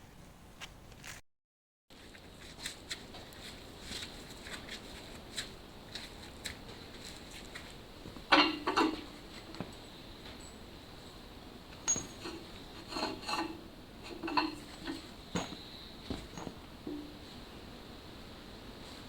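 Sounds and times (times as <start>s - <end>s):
metal clanking: 8.3s - 9.2s, 11.8s - 15.6s
hand tools tapping on metal: 8.3s - 9.8s, 11.8s - 17.2s.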